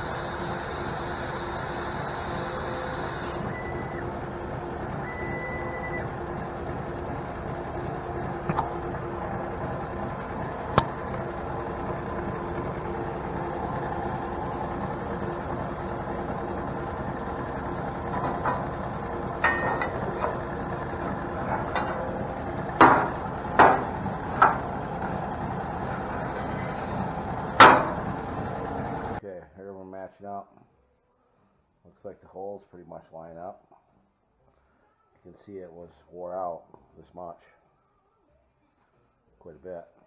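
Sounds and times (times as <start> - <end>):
steady mechanical hum: 0.0 - 29.2
metal parts clanking: 17.7 - 29.2.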